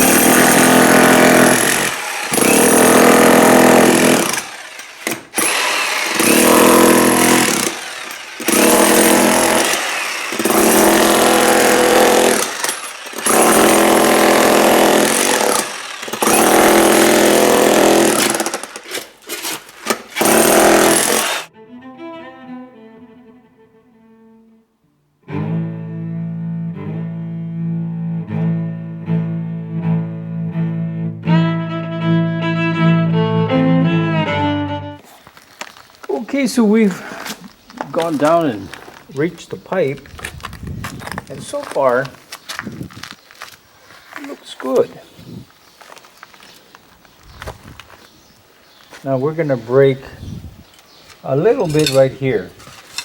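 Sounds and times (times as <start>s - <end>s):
jackhammer breaking concrete: 0.0s - 21.5s
slow cello music: 21.5s - 35.0s.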